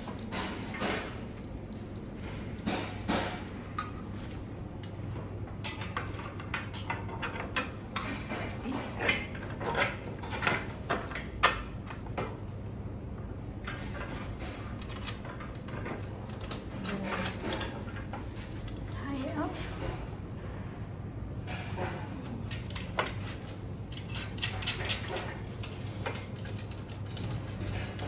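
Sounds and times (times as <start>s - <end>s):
chair parts clicking and knocking: 4.8s - 12.4s, 13.6s - 19.0s, 21.4s - 28.0s.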